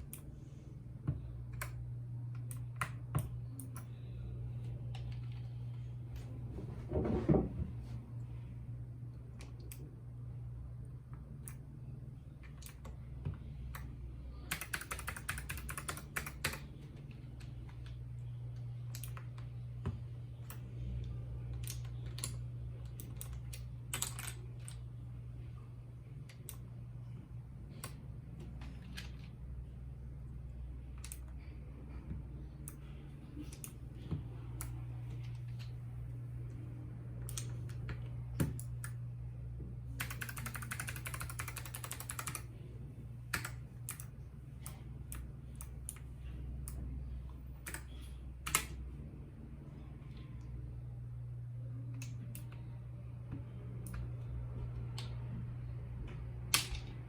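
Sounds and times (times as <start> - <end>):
steady low hum: 0.0 - 57.0
mechanical keyboard typing: 13.7 - 17.0, 40.0 - 42.5, 43.3 - 46.0, 47.6 - 48.8.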